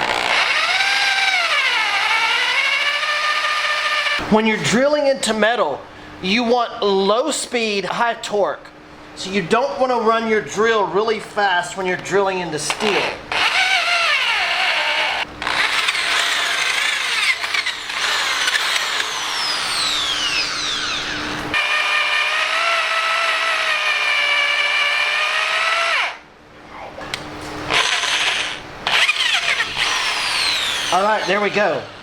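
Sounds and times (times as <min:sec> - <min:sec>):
electric drill boring through steel: 0:00.0 - 0:04.2, 0:13.3 - 0:26.2, 0:27.7 - 0:31.7.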